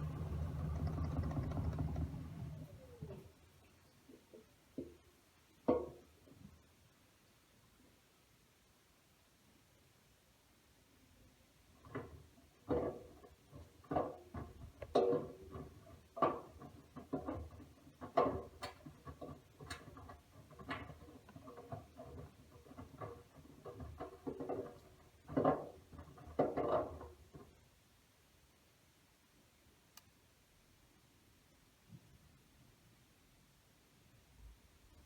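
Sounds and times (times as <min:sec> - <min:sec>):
laundry tumbling in washing machine: 0:00.0 - 0:03.3, 0:11.8 - 0:27.6.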